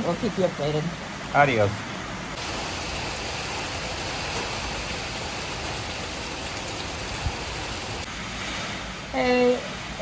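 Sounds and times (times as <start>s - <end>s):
heavy rain falling: 2.4s - 8.2s.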